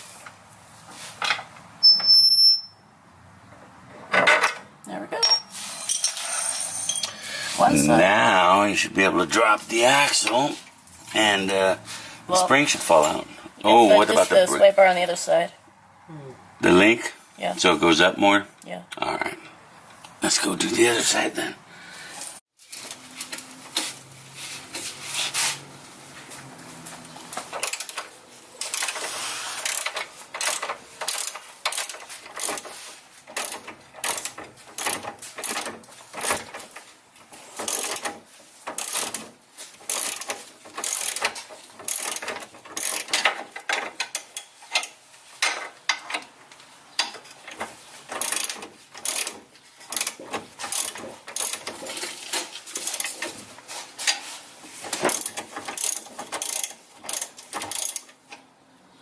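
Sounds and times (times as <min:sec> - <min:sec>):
ratchet wrench clicking: 0:28.6 - 0:32.6, 0:33.3 - 0:36.5, 0:37.6 - 0:38.1, 0:38.7 - 0:39.2, 0:39.8 - 0:41.3, 0:41.9 - 0:43.2, 0:48.2 - 0:49.3, 0:49.9 - 0:51.7, 0:55.0 - 0:58.1.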